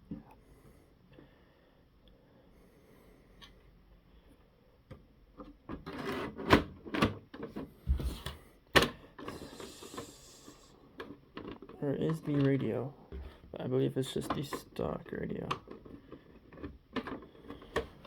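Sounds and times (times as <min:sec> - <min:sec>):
plastic parts clacking: 0:11.0 - 0:12.8.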